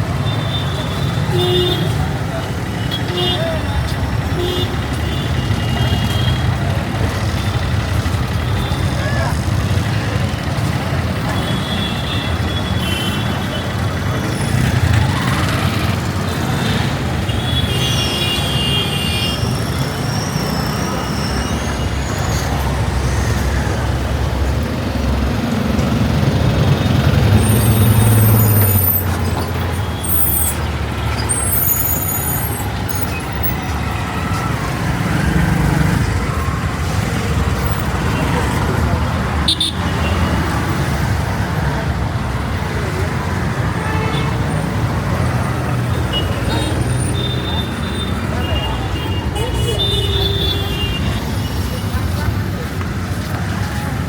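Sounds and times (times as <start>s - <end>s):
road traffic rumble: 0.0s - 54.0s.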